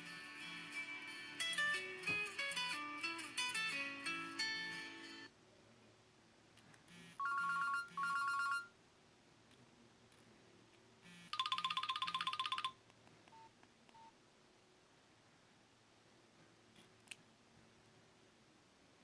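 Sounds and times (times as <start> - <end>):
trilling phone ring: 7.2 - 8.7, 11.3 - 12.8.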